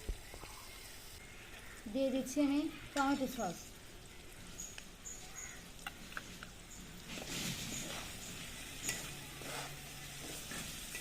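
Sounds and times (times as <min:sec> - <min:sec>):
food sizzling in a pan: 0:00.0 - 0:11.0.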